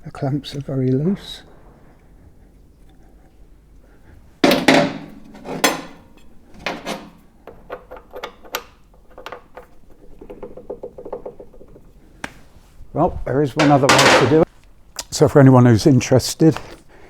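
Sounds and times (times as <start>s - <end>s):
metal hand tools clanking: 4.4s - 12.1s, 13.6s - 14.5s.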